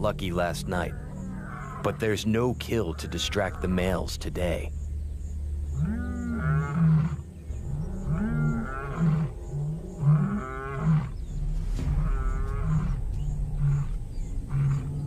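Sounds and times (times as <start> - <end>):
lion grunting: 5.8 - 15.0
lion roaring: 5.8 - 15.0.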